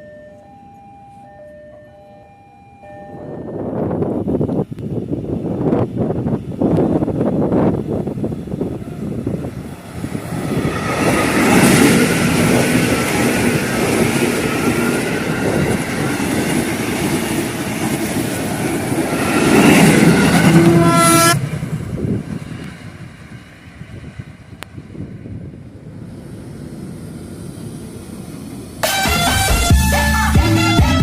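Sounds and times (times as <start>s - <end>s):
train wheels on rails: 3.6s - 29.8s
train horn: 19.8s - 21.4s.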